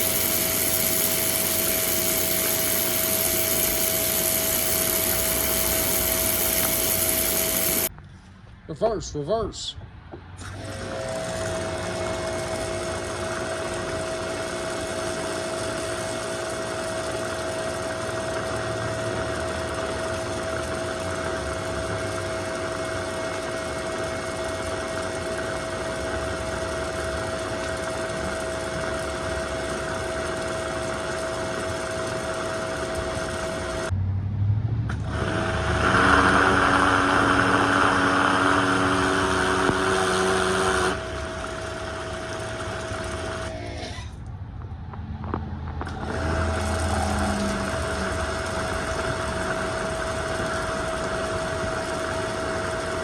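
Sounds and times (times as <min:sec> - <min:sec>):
small engine running: 0:00.0 - 0:07.9, 0:10.4 - 0:34.0, 0:34.8 - 0:44.0, 0:44.7 - 0:53.0
strong hiss: 0:00.0 - 0:07.9.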